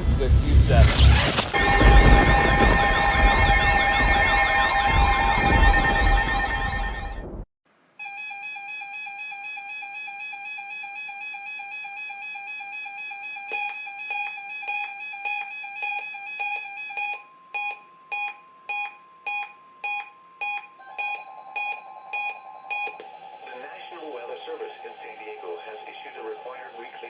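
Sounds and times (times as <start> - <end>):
sharp electronic beeps: 0.0 - 7.4, 20.5 - 24.3
weather radio alert tone: 0.3 - 7.4.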